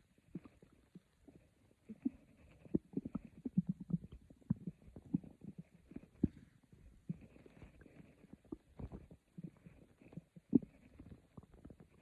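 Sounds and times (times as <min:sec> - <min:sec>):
stomach growling: 0:00.0 - 0:12.0.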